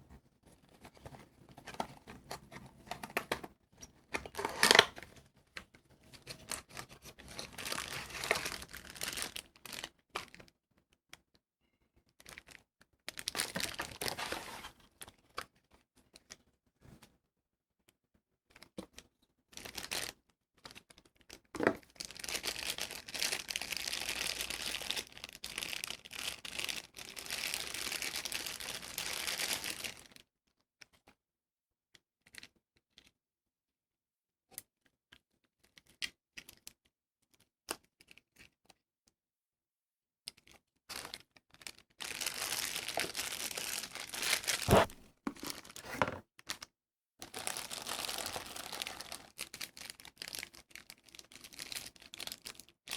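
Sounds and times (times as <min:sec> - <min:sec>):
packaging crinkling and tearing: 0:04.1 - 0:05.1, 0:06.2 - 0:10.3, 0:13.1 - 0:14.7, 0:40.9 - 0:46.2, 0:47.2 - 0:52.7.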